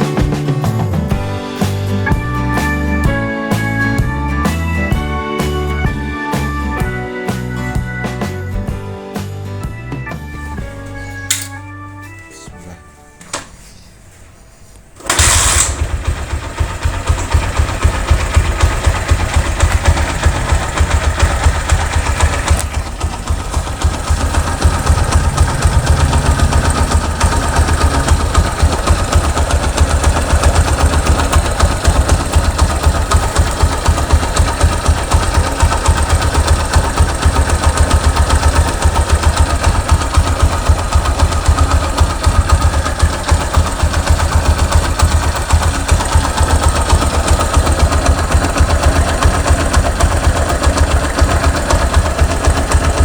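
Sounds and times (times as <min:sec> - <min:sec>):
motorcycle engine running: 0:00.0 - 0:01.6, 0:15.0 - 0:53.0.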